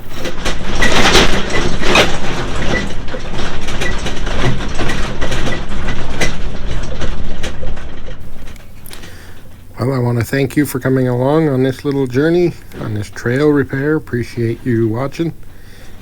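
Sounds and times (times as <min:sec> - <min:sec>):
loud mechanical clatter: 0:00.0 - 0:10.0.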